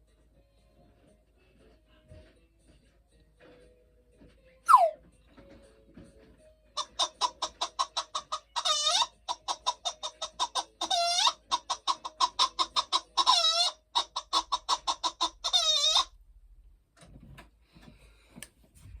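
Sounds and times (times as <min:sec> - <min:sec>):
hen cackling: 0:04.7 - 0:05.0, 0:06.8 - 0:16.1
hen squawking: 0:04.7 - 0:05.0, 0:06.8 - 0:16.1.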